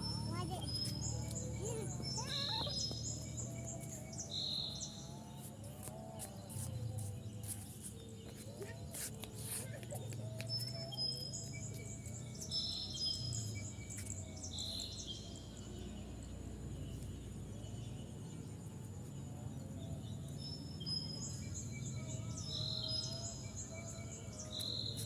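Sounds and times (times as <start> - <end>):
birds whistling calls: 0.0 - 5.1
faint insects: 0.0 - 25.0.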